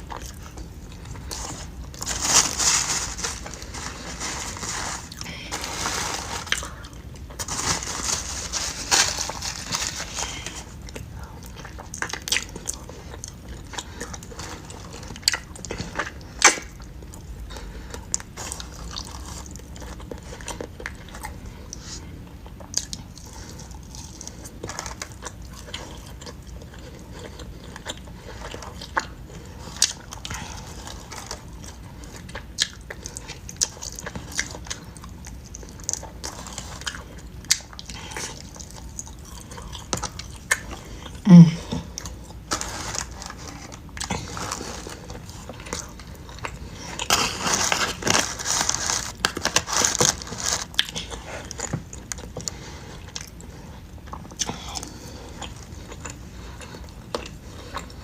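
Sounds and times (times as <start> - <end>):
person chewing: 0.0 - 58.0
crinkling and rustling: 0.2 - 12.6, 37.9 - 58.0.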